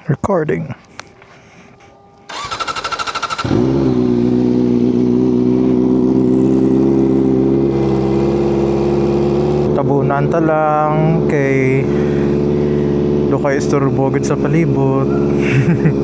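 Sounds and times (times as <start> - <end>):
motorcycle engine idling: 0.0 - 16.0
electric starter cranking: 2.1 - 4.4.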